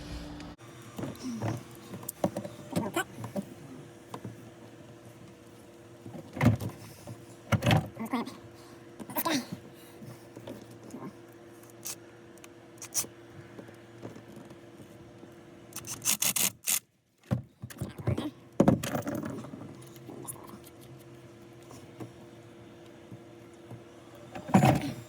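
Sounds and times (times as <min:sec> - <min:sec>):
steady low hum: 0:00.0 - 0:04.1.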